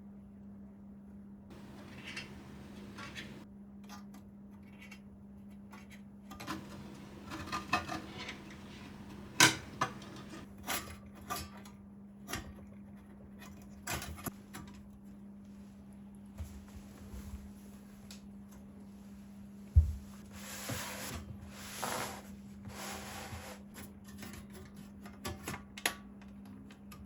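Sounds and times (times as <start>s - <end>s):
steady low hum: 1.5s - 3.4s, 6.5s - 10.4s.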